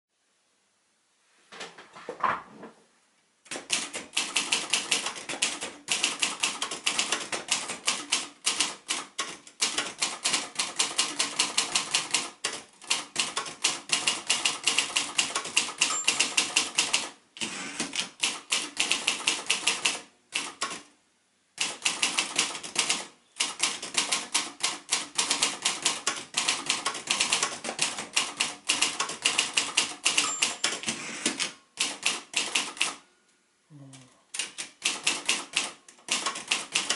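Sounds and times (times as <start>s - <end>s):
typewriter key strikes: 21.6s - 32.9s.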